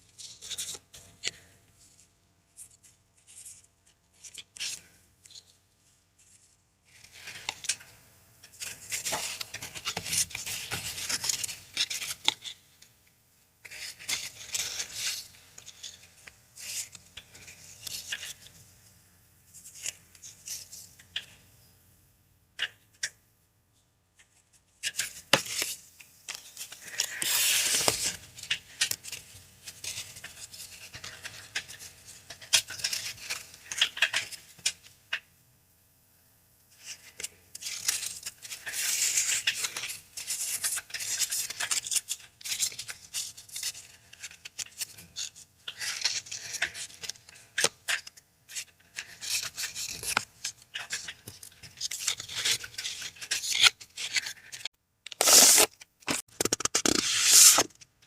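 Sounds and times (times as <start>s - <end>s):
paper crinkling and tearing: 37.6s - 57.8s.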